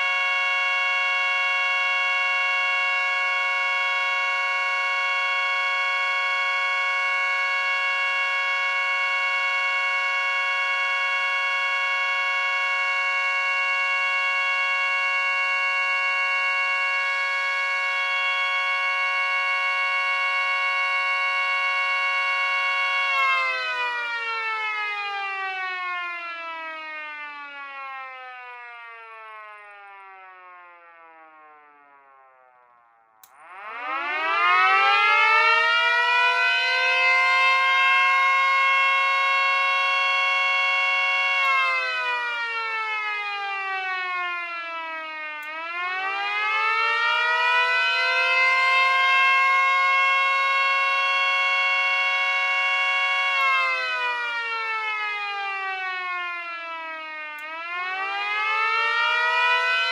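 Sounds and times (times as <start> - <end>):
mini sirens wailing: 0.0 - 32.5, 33.2 - 59.9
sirens winding down: 0.0 - 59.9.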